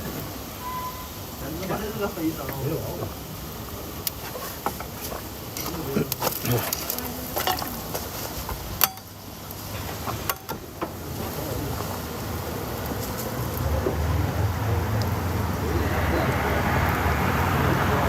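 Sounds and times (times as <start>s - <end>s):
food sizzling: 0.0s - 18.0s
metal utensils clicking and scraping: 4.1s - 10.6s.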